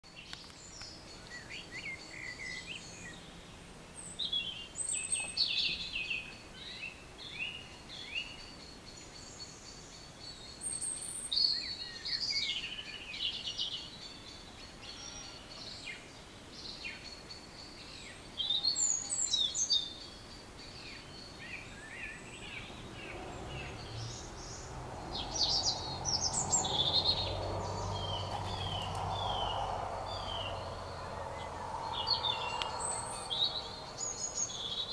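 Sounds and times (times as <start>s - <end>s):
songbirds singing: 0.0s - 34.9s
low rumble: 22.6s - 34.4s.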